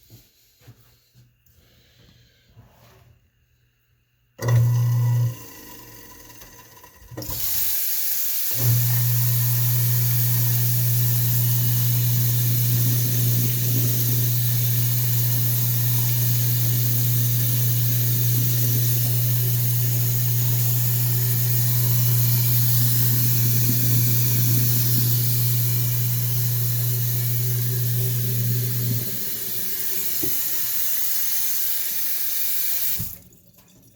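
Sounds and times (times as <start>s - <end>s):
garbage disposal motor humming: 4.4s - 33.9s
tap water running: 7.2s - 33.9s.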